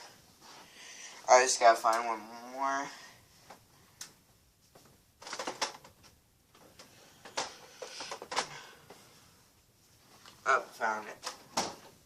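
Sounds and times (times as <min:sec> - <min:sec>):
rustling and clattering: 0:04.6 - 0:09.1.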